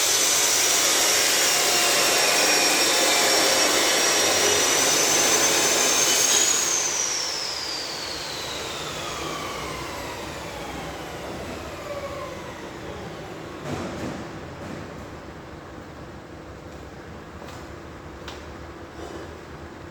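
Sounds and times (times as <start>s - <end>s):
power tool motor spinning down: 0.0s - 13.7s.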